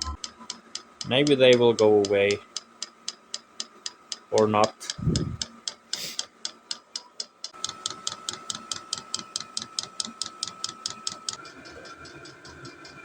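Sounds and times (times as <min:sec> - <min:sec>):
fuel pump ticking rapidly: 0:00.2 - 0:13.0
heater blower and burner noise: 0:04.1 - 0:06.4, 0:07.5 - 0:13.0.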